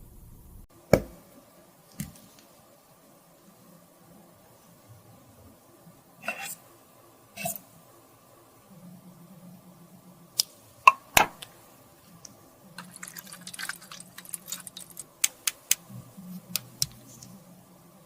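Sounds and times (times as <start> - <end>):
small hard objects clicking: 12.8 - 15.9.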